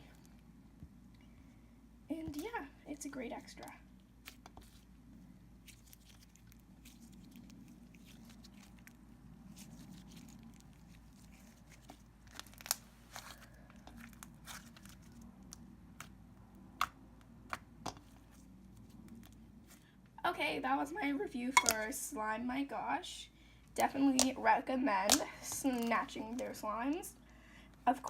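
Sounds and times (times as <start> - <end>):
slime squishing with pops: 2.3 - 19.4, 23.7 - 24.4, 25.0 - 27.0.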